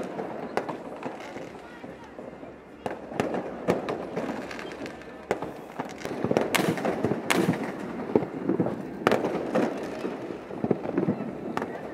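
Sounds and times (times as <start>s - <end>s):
fireworks bangs: 0.0s - 11.9s
fireworks crackling: 0.0s - 11.9s.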